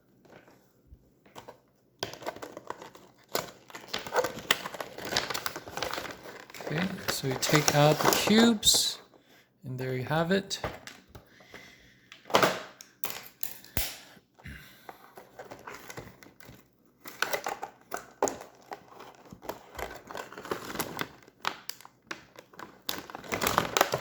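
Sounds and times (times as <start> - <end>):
plastic packaging crinkling: 2.0 - 9.0, 15.2 - 24.0.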